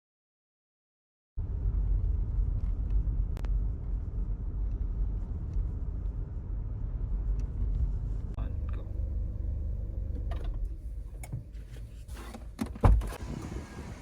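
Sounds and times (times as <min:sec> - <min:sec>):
steady low rumble: 0:01.4 - 0:12.0.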